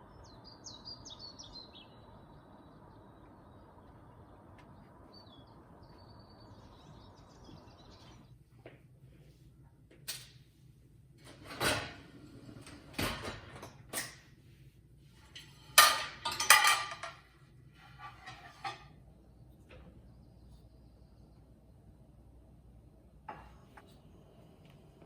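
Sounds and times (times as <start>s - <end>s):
dishes knocking and clinking: 15.8s - 17.3s.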